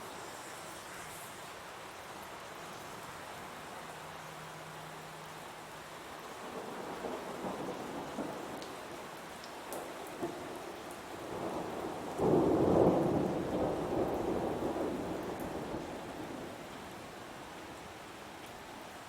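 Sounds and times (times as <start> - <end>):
heavy rain falling: 0.0 - 19.0
thunder rumbling: 11.2 - 16.6.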